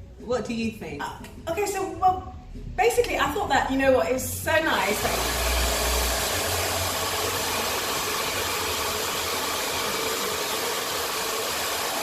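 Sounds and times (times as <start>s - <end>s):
hair dryer blowing air: 4.8s - 12.0s.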